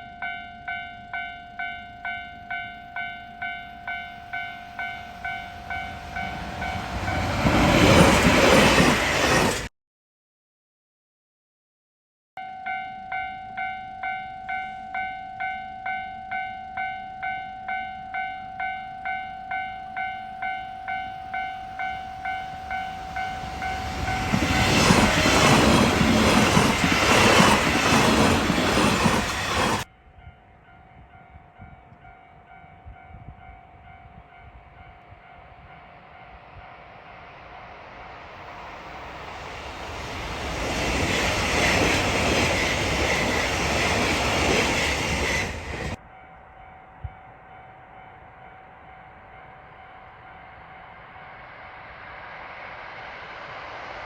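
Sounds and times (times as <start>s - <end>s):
level-crossing warning bell: 0.0s - 8.0s, 12.4s - 36.9s
train passing loudly: 0.0s - 9.7s, 13.1s - 29.9s, 30.6s - 54.0s.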